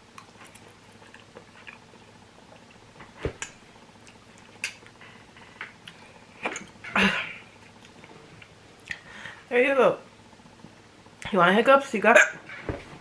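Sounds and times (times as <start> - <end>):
person hiccuping: 12.1 - 12.4.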